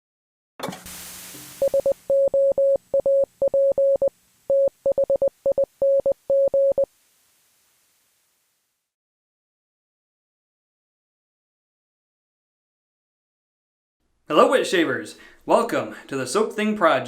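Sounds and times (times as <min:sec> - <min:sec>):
hiss: 0:00.9 - 0:01.9, 0:06.9 - 0:09.0
morse code beeps: 0:01.6 - 0:06.9.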